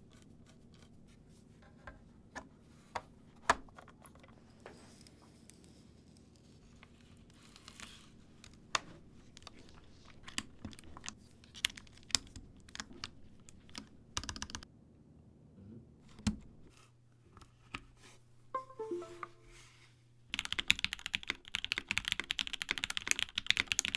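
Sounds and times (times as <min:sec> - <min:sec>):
mechanical keyboard keystrokes: 0:20.4 - 0:23.9.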